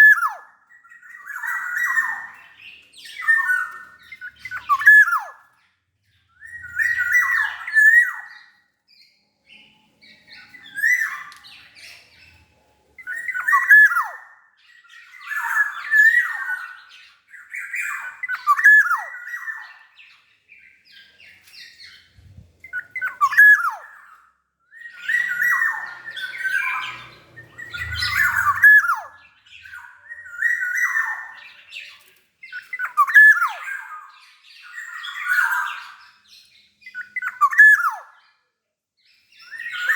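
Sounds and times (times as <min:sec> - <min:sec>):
oriole squawks and whistles: 0:00.0 - 0:05.6, 0:06.3 - 0:08.6, 0:09.6 - 0:12.4, 0:13.0 - 0:36.2, 0:36.8 - 0:38.4, 0:39.3 - 0:39.9.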